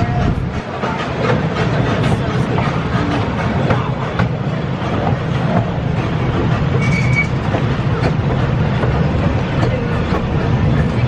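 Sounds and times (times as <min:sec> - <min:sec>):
ride train rumbling on track: 0:00.0 - 0:11.0
wheels clicking on rails: 0:00.0 - 0:11.0
brief high squeal: 0:06.8 - 0:07.4.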